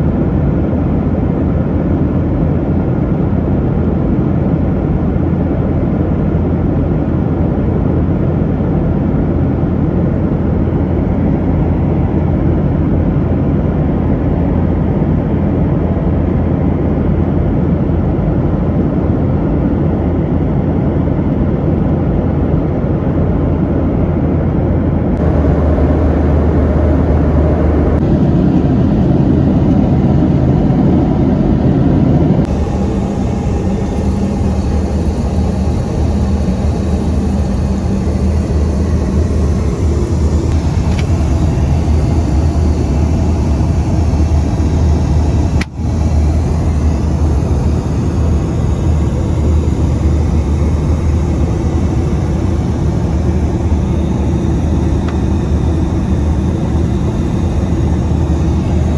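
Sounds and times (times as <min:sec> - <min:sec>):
jet engines rumbling: 0:25.0 - 0:58.9.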